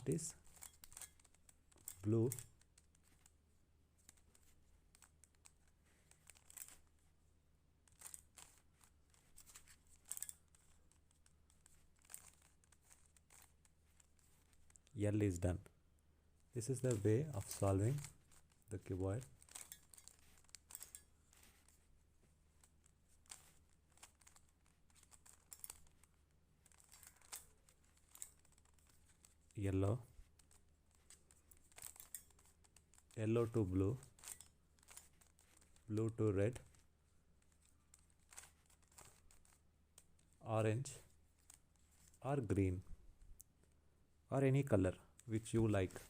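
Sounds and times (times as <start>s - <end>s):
plastic puzzle cube clicking: 7.9s - 14.9s.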